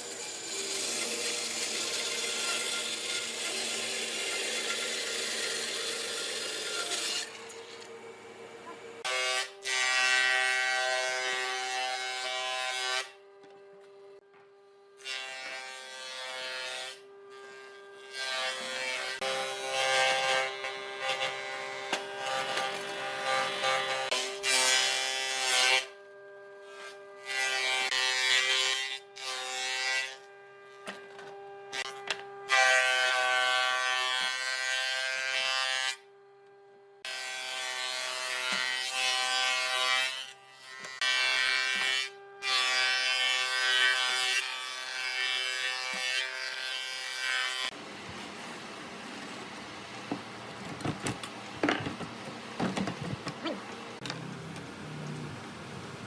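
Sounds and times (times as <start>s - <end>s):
power tool rasping wood: 0.0s - 7.9s, 37.1s - 47.8s.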